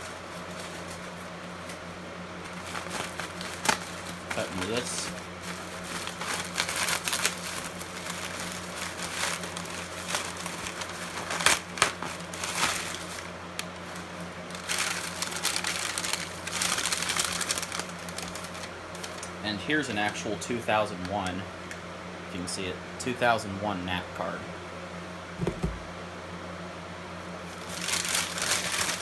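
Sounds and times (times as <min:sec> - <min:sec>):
packaging crinkling and rustling: 0:00.0 - 0:20.2, 0:27.4 - 0:29.0.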